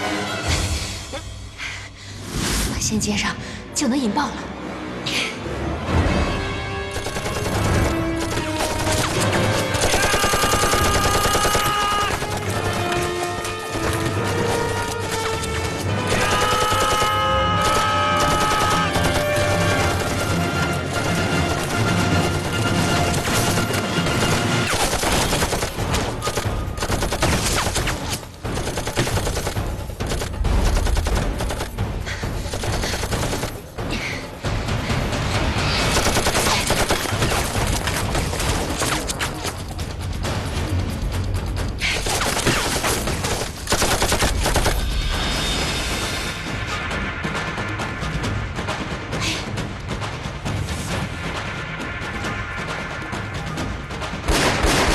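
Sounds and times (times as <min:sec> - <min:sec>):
dramatic background music: 0:00.0 - 0:54.9
rapid gunfire: 0:06.9 - 0:33.8, 0:35.8 - 0:39.1, 0:41.8 - 0:45.1, 0:54.3 - 0:54.9
rapid rifle and machine-gun fire: 0:06.9 - 0:33.8, 0:35.8 - 0:39.3, 0:41.8 - 0:45.2, 0:54.2 - 0:54.9.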